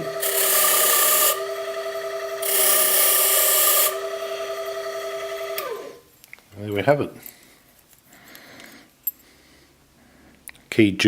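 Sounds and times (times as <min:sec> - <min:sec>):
machine motor humming: 0:00.0 - 0:06.0.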